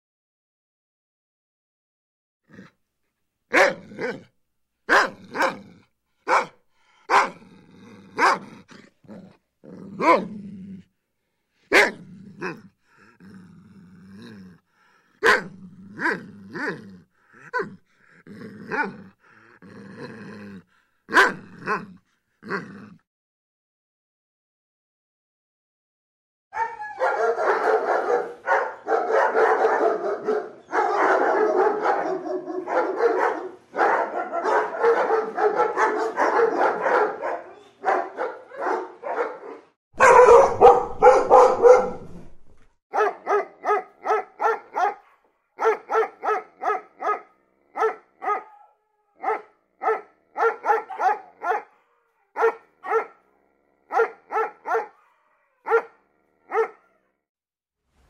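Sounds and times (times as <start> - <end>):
dog barking: 3.5 - 4.3, 4.9 - 7.4, 8.1 - 8.7, 10.0 - 10.4, 11.7 - 12.6, 15.2 - 16.8, 17.4 - 17.8, 18.6 - 19.0, 21.1 - 21.9, 26.6 - 42.3, 42.9 - 57.1.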